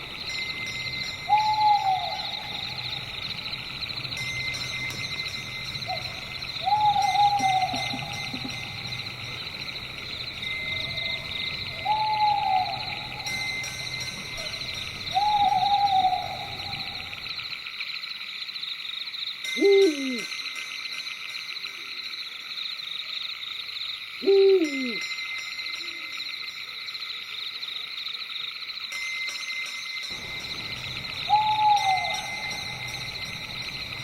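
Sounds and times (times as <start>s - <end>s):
pulsing chorus of night creatures: 0.0s - 25.1s, 30.1s - 34.0s
owl hooting: 1.2s - 3.1s, 5.9s - 8.9s, 10.6s - 13.4s, 15.1s - 17.3s, 19.6s - 20.3s, 24.2s - 25.0s, 30.7s - 33.4s.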